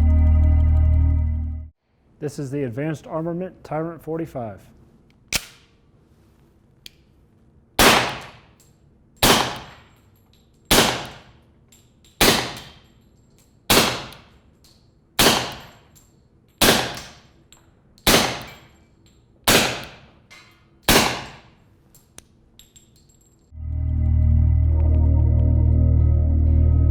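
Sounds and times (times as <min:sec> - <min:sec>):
suppressed pistol shots: 0:07.8 - 0:08.5, 0:09.2 - 0:10.0, 0:10.7 - 0:11.3, 0:12.2 - 0:12.9, 0:13.7 - 0:14.4, 0:15.2 - 0:15.8, 0:16.6 - 0:17.2, 0:18.0 - 0:18.7, 0:19.5 - 0:20.2, 0:20.8 - 0:21.5.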